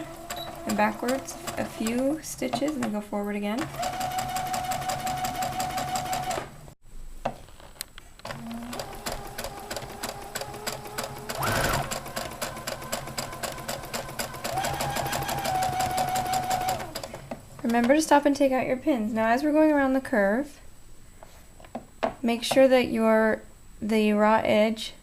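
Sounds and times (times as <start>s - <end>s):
sewing machine stitching: 0.0s - 6.5s, 8.2s - 18.0s.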